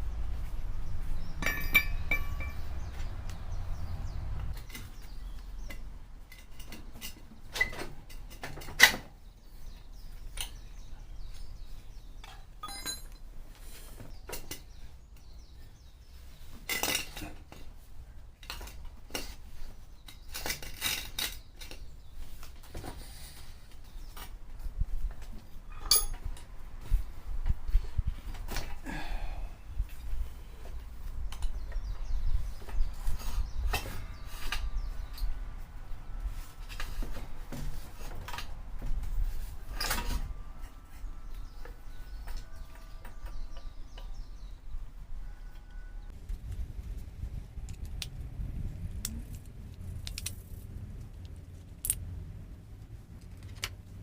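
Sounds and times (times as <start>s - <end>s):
metal tools clinking and clanking: 1.4s - 2.8s, 5.7s - 9.0s, 12.2s - 13.3s, 16.6s - 17.7s, 20.1s - 21.9s, 25.7s - 26.5s.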